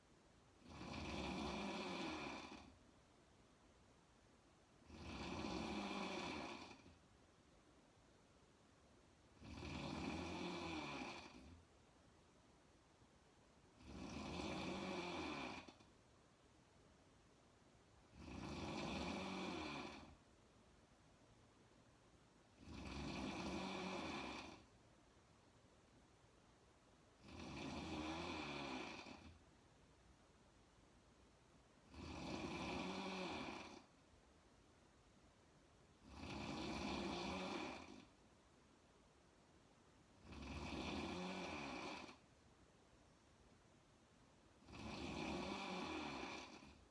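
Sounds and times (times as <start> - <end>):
woman snoring: 0.6 - 2.8, 4.8 - 7.0, 9.4 - 11.6, 13.8 - 15.9, 18.1 - 20.2, 22.6 - 24.7, 27.2 - 29.4, 31.8 - 34.0, 36.0 - 38.2, 40.2 - 42.2, 44.6 - 46.9.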